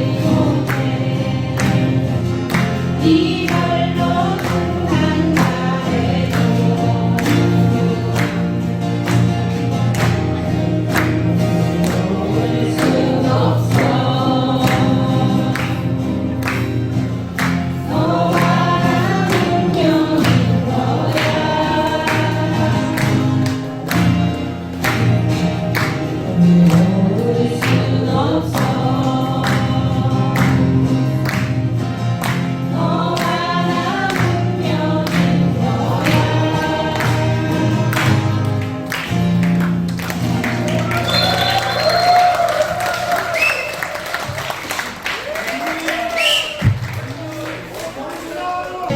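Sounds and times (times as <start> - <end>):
group of people singing: 0.0 - 39.2
acoustic guitars strumming: 0.0 - 44.8.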